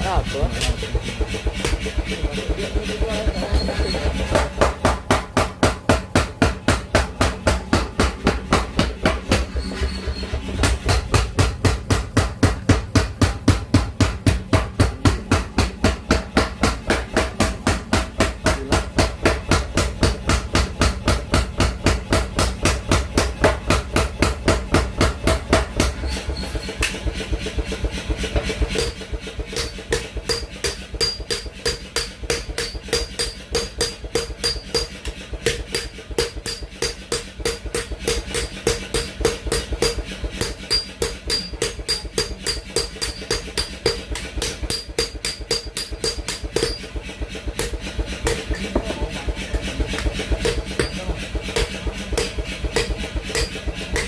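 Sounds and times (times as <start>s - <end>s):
hammer striking metal on anvil: 0.6s - 54.0s.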